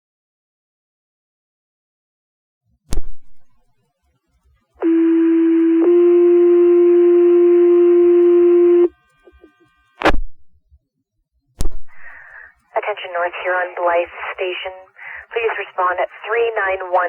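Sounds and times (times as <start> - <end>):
two-tone pager alert: 4.8 - 9.4.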